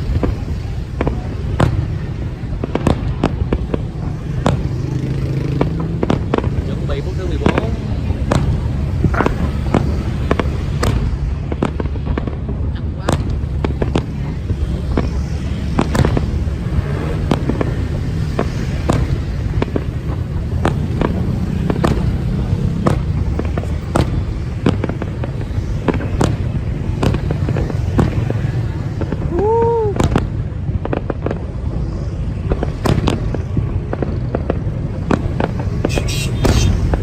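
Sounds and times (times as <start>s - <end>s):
fireworks bursting with sharp bangs: 0.0s - 37.0s.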